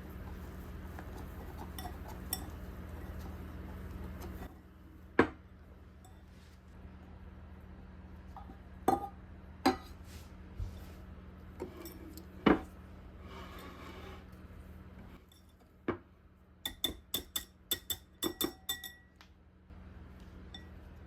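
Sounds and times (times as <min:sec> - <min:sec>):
low steady hum: 0:00.0 - 0:21.0
dishes and utensils clinking: 0:01.2 - 0:03.3, 0:16.6 - 0:19.2.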